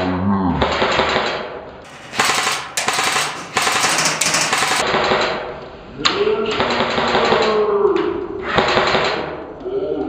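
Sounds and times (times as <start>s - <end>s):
airsoft rifle firing full auto: 0.8s - 5.5s.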